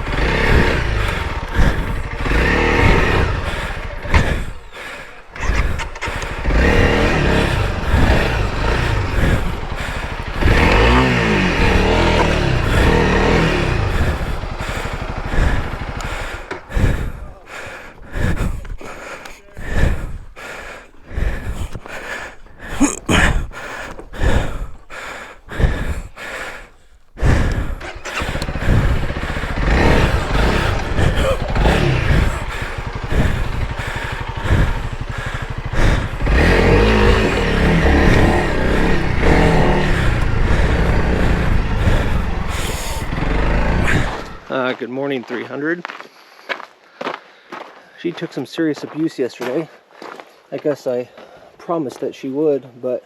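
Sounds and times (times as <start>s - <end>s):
motorcycle engine revving: 0.0s - 18.8s, 21.1s - 24.7s, 27.2s - 44.7s.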